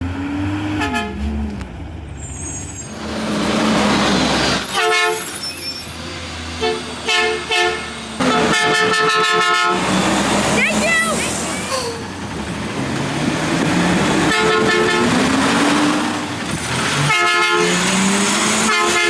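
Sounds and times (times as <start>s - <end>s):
truck horn honking: 0.8s - 1.2s, 4.7s - 5.3s, 6.6s - 9.9s, 10.6s - 11.9s, 14.2s - 15.4s, 17.0s - 19.0s.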